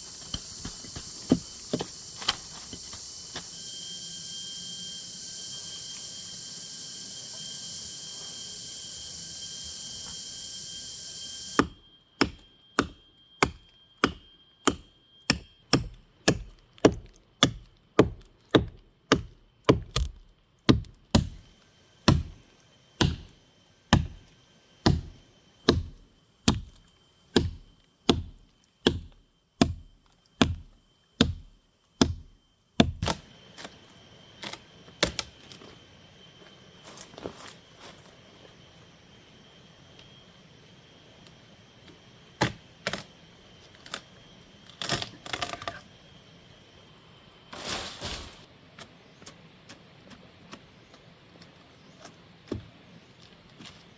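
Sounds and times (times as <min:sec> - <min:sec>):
insects buzzing: 0:00.0 - 0:19.9, 0:20.8 - 0:53.9
wood being chopped: 0:11.6 - 0:21.4, 0:22.1 - 0:22.4, 0:23.0 - 0:24.2, 0:24.8 - 0:26.8, 0:27.4 - 0:33.3.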